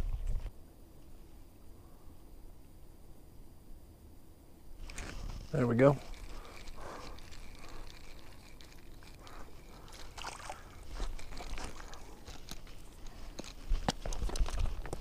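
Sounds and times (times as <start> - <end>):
small clicks and scrapes: 4.8 - 15.0
water sloshing: 6.2 - 13.0.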